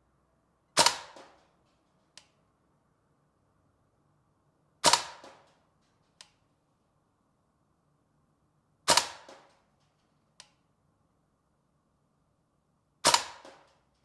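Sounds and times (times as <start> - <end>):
airsoft rifle shots: 0.8 - 1.6, 4.8 - 5.6, 8.8 - 9.7, 13.0 - 13.8
faint click: 5.5 - 6.4, 9.3 - 10.6.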